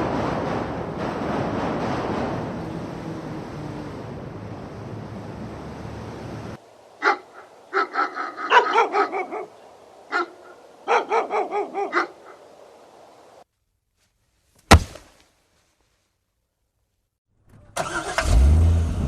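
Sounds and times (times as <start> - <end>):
dog barking: 7.0 - 12.4.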